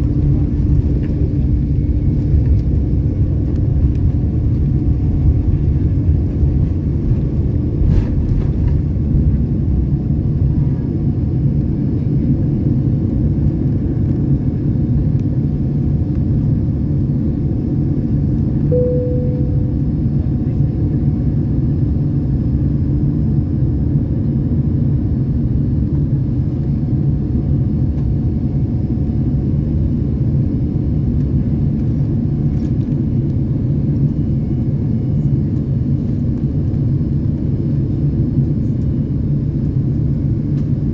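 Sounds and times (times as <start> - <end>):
airliner cabin engine rumble: 0.0 - 40.9
short cabin tone: 18.7 - 20.2.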